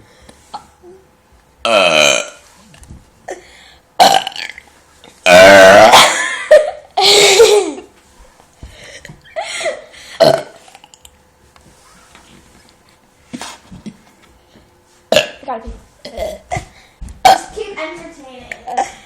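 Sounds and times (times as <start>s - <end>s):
person burping: 1.6s - 2.4s, 4.0s - 4.6s, 5.2s - 6.4s, 10.2s - 11.1s, 15.1s - 15.4s, 16.1s - 17.5s.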